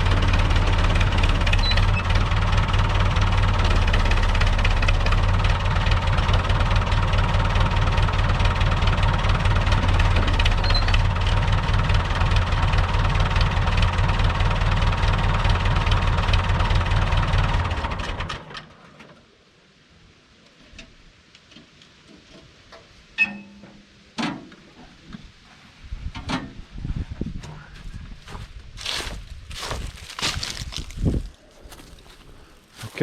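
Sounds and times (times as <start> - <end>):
tractor diesel engine: 0.0 - 19.0, 27.6 - 33.0.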